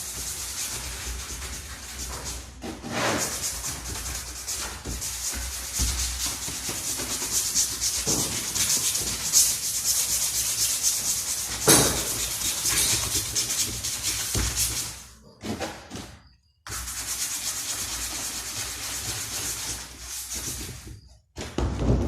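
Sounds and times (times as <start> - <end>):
scraping against a hard surface: 0.2 - 16.1.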